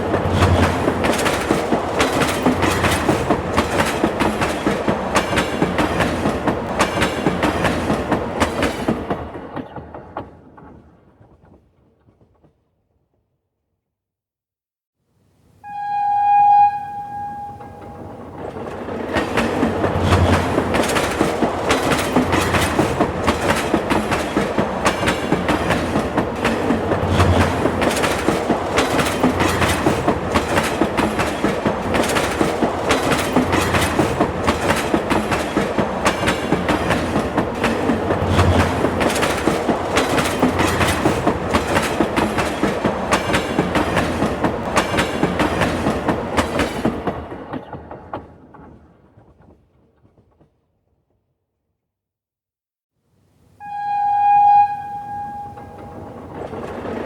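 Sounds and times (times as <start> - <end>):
train wheels clacking on rails: 0.0 - 11.6, 17.0 - 50.6, 55.1 - 57.0
train horn: 15.6 - 18.4, 53.6 - 56.3.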